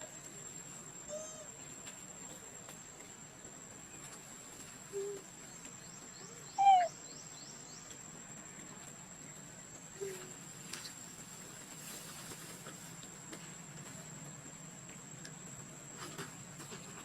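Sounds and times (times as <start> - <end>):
insects droning: 0.0 - 17.0
short animal calls: 6.6 - 6.9.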